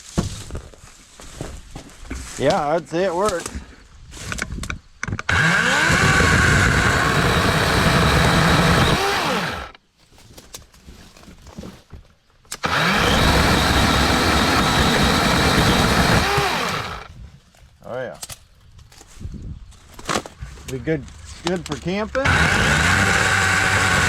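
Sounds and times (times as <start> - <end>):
chainsaw cutting small branches: 5.2 - 9.8, 12.5 - 17.1, 21.3 - 24.0.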